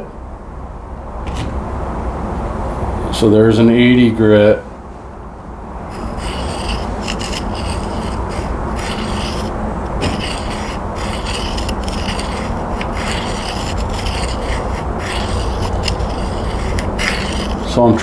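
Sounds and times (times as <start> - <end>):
knife scraping on sharpening stone: 5.9 - 17.7.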